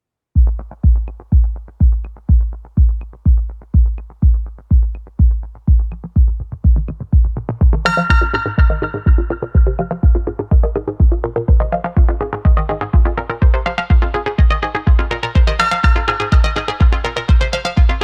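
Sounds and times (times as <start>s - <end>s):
drum machine kick drum: 0.4s - 18.0s
sustained synthesizer chord: 7.9s - 18.0s.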